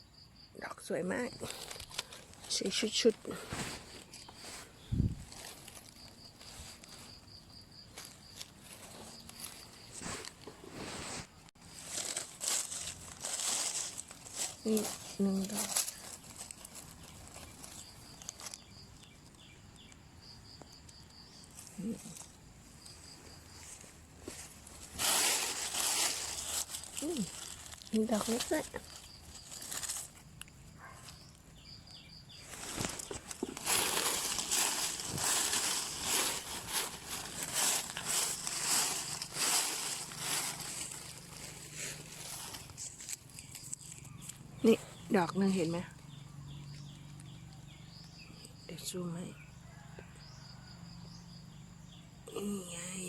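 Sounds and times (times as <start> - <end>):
loud rustle: 7.9 - 18.6, 23.6 - 30.2, 32.4 - 44.0.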